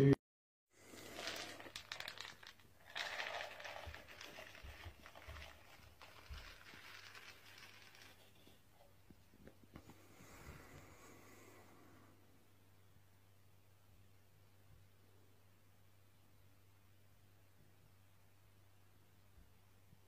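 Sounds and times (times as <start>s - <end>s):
soft crinkling and rustling: 0.8s - 11.3s.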